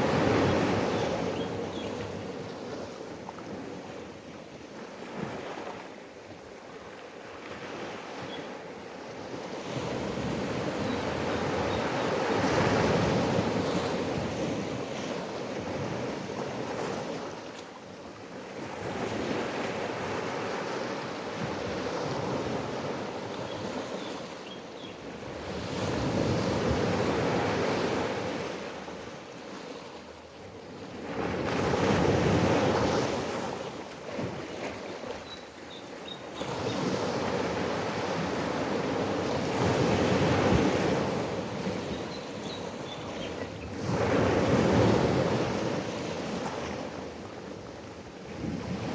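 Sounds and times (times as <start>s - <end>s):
ocean waves breaking: 0.0s - 1.4s, 30.9s - 48.9s
faint high bird chirps: 35.2s - 36.8s, 41.9s - 43.7s.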